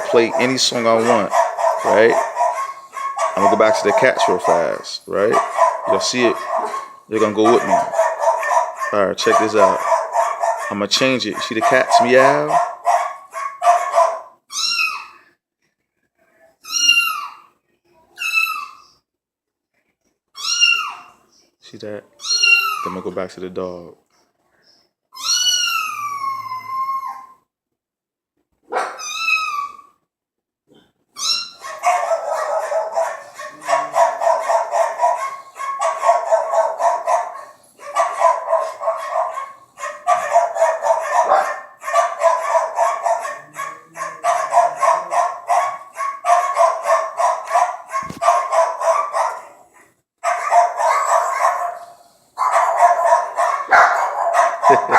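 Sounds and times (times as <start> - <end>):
dog barking: 0.0 - 14.4, 28.7 - 29.1, 31.5 - 54.9
cat meowing: 20.4 - 21.1, 22.2 - 22.9, 25.2 - 27.4, 28.8 - 29.9.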